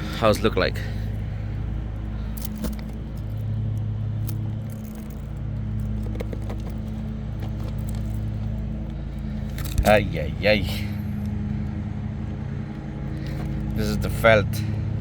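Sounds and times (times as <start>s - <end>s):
engine hum: 0.0s - 15.0s
shingle prying clicks and scrapes: 1.2s - 10.0s.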